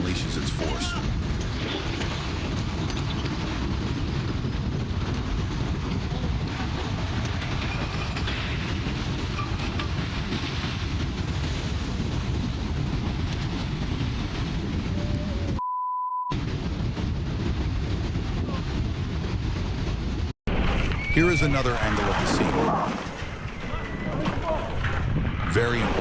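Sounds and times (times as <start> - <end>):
short beep tone: 15.6 - 16.3
mud and rocks rushing: 20.5 - 26.0.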